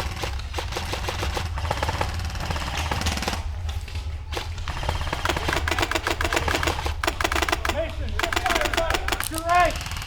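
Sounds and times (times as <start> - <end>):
airsoft guns firing: 0.0 - 10.0.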